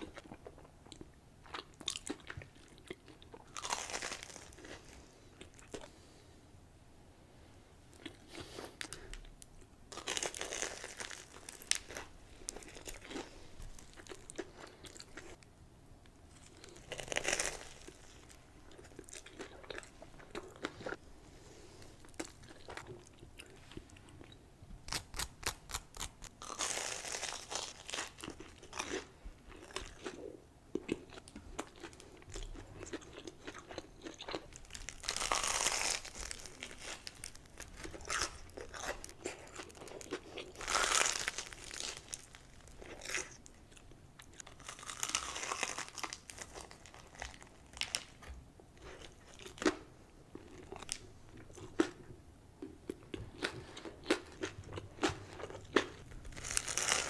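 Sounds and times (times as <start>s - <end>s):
crunchy bites and chewing: 1.4s - 5.9s, 16.3s - 21.0s, 22.0s - 57.0s.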